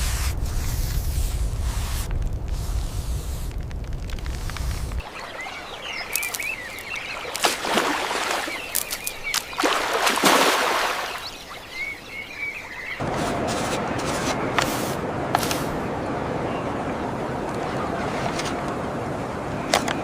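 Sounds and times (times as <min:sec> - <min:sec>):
small birds twittering: 0:05.0 - 0:13.0.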